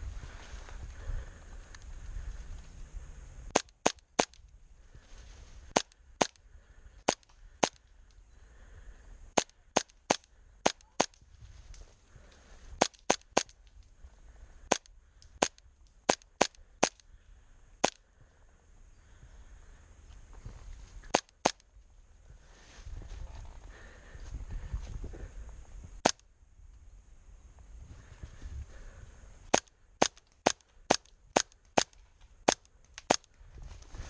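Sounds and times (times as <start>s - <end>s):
airsoft gun shots popping: 3.5s - 4.4s, 29.5s - 33.3s.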